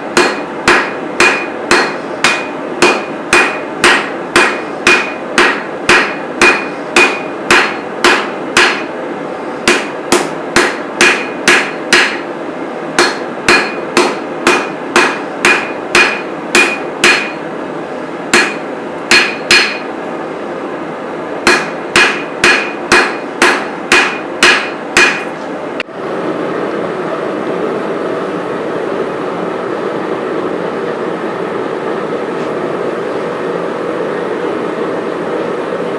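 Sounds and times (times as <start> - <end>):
hammer striking steel on anvil: 0.1 - 9.0, 9.6 - 12.3, 13.0 - 17.5, 18.3 - 19.9, 21.4 - 25.4.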